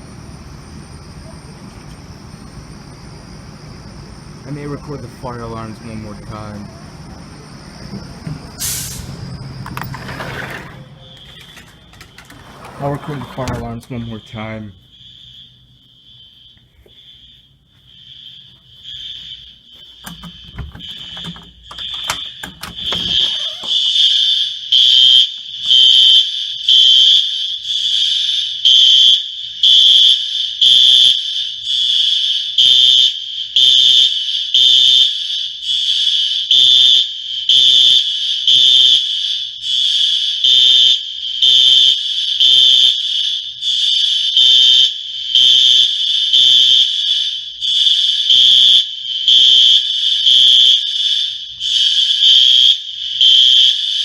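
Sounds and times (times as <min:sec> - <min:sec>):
fire alarm pulsing tone: 0:00.0 - 0:54.0
rustling and knocks: 0:19.8 - 0:23.7.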